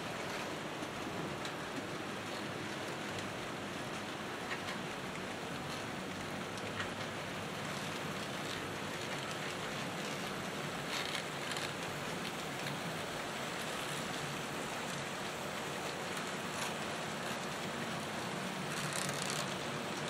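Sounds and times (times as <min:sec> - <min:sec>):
model train wheels rolling: 0:13.5 - 0:20.0.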